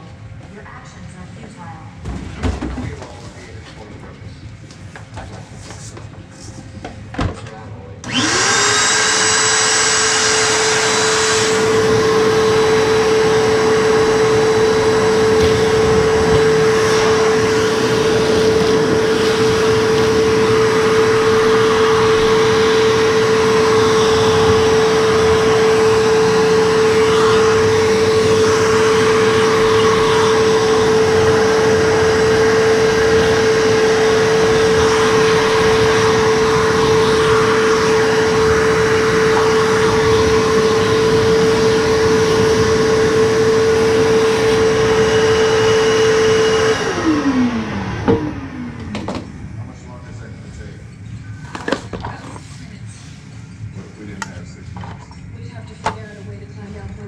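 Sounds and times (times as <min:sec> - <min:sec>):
vacuum cleaner whining: 0:04.7 - 0:57.0.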